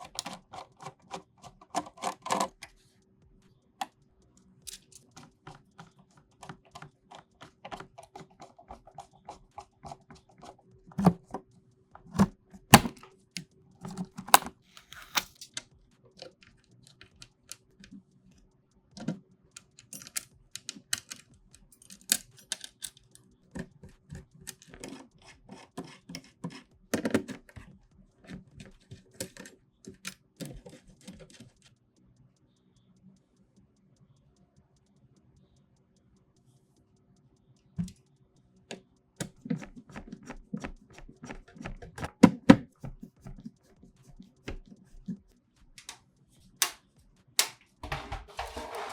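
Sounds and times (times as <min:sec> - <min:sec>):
computer parts clicking and knocking: 0:00.0 - 0:02.7, 0:04.7 - 0:13.1, 0:13.9 - 0:15.7, 0:19.0 - 0:31.6, 0:38.7 - 0:48.9.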